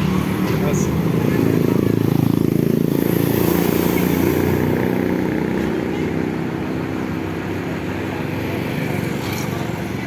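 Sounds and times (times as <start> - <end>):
bus diesel engine rumbling: 0.0 - 2.5.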